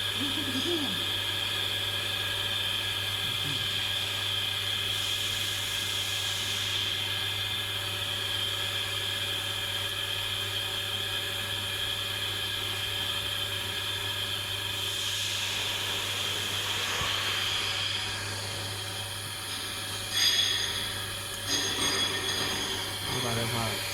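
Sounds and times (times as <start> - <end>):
machinery hum and hiss: 0.0 - 23.9.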